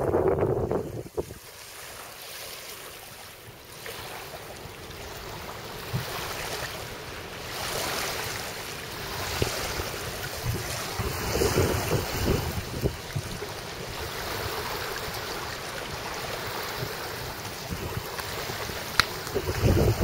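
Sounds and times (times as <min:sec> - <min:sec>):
waves rushing: 0:00.0 - 0:20.0
wind: 0:00.0 - 0:20.0.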